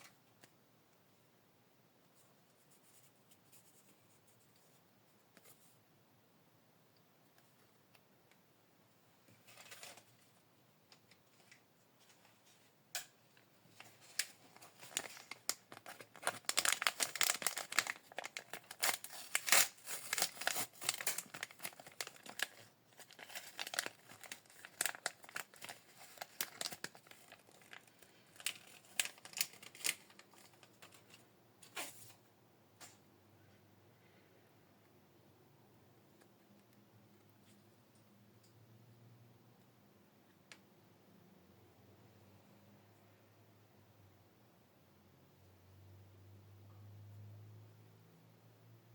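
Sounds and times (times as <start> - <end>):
plastic packaging crinkling: 13.7 - 32.1.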